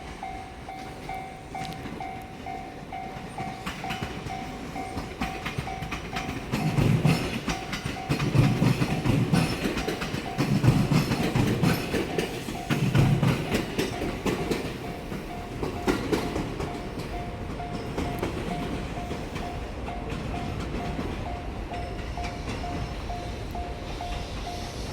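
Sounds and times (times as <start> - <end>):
level crossing warning bell: 0.0 - 24.9
train rumble: 0.0 - 24.9
train wheels thumping over rail joints: 3.5 - 23.1.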